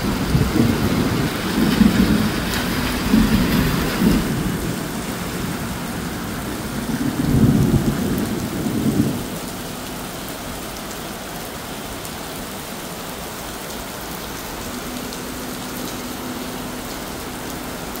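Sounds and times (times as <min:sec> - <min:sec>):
thunder rumbling: 0:00.0 - 0:10.9
steady rain: 0:00.0 - 0:18.0.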